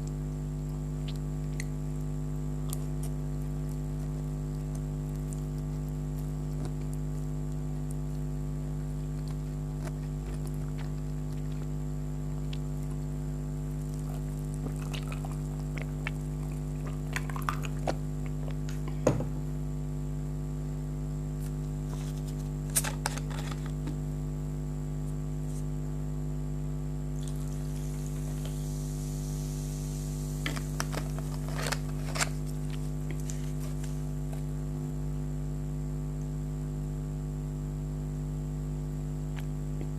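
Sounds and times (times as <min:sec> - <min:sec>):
electrical mains hum: 0:00.0 - 0:39.9
person eating noodles: 0:09.0 - 0:19.0
soft hiss: 0:27.3 - 0:30.9.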